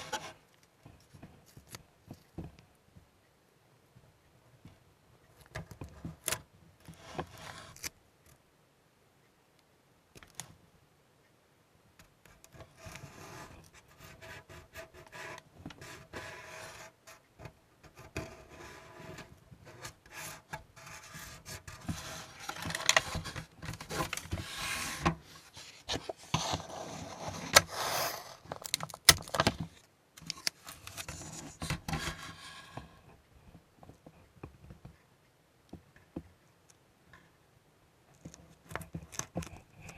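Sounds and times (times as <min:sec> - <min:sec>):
hands and tools scraping plastic: 0:00.0 - 0:01.8, 0:05.4 - 0:07.9, 0:12.3 - 0:33.2, 0:38.1 - 0:39.9.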